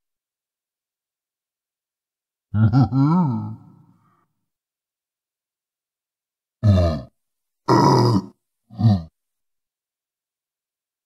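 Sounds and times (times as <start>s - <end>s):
deep voice-made monster cry: 2.6s - 3.8s, 6.6s - 7.1s, 7.7s - 9.1s.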